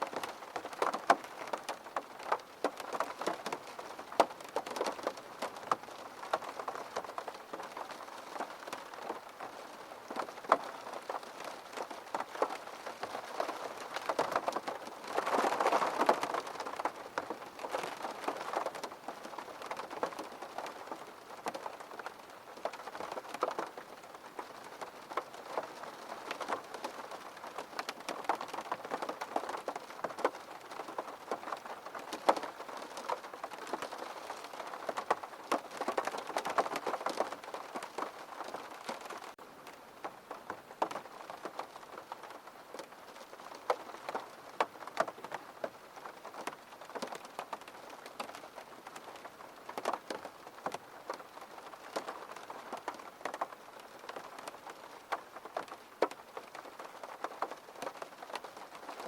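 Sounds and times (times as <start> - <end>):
rain drops tapping on hard surface: 0.0 - 59.0.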